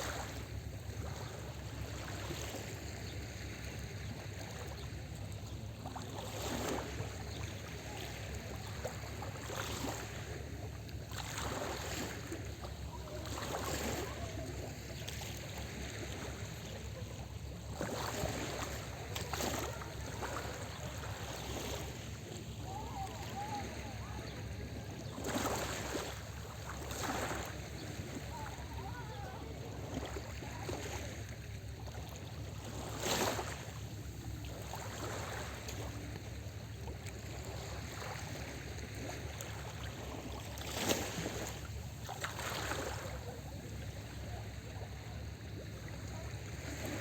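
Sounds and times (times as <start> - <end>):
small waves breaking on shore: 0.0 - 47.0.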